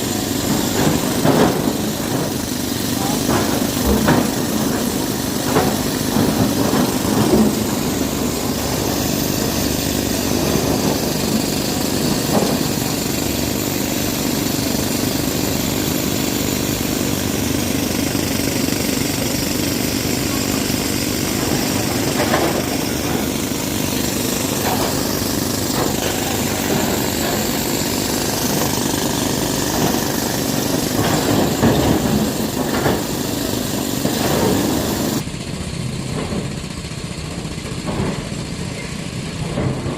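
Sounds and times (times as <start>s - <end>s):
heavy machinery diesel engine: 0.0s - 39.9s
metal knocks and clanks: 0.4s - 13.0s, 20.8s - 35.2s.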